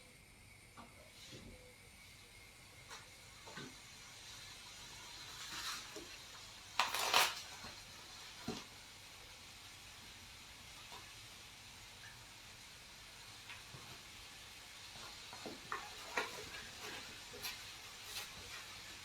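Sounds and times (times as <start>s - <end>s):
faint steady hiss: 0.0s - 19.0s
scraping or rustling: 6.8s - 7.8s.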